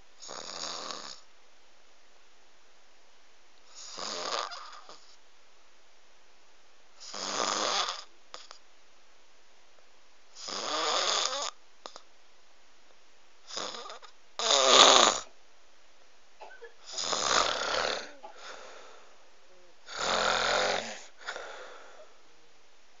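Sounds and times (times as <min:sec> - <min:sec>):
loud rhythmic snoring: 0:00.2 - 0:01.3, 0:03.7 - 0:05.2, 0:07.0 - 0:08.6, 0:10.3 - 0:12.1, 0:13.4 - 0:15.3, 0:16.8 - 0:18.9, 0:19.8 - 0:22.1.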